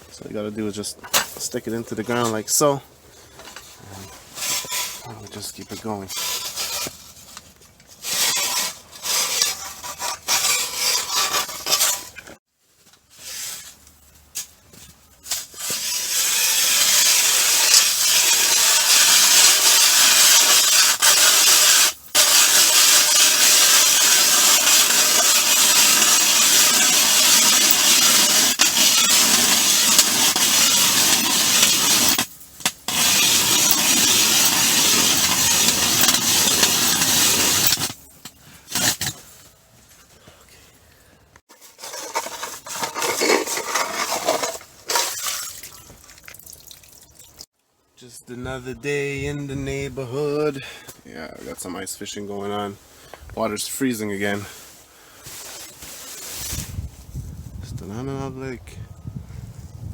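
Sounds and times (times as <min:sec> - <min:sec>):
ice auger grinding through ice: 0:08.0 - 0:12.2, 0:15.4 - 0:38.0, 0:38.7 - 0:39.2, 0:41.6 - 0:45.6.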